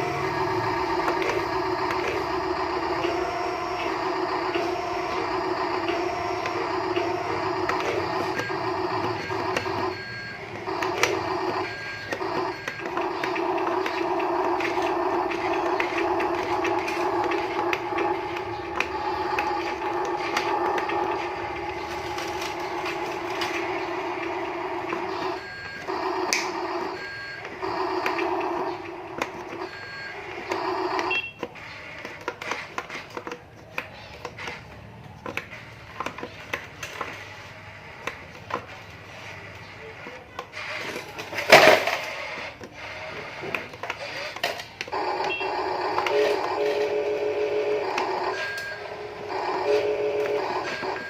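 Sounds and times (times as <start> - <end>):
excavator motor whining: 0.0 - 51.0.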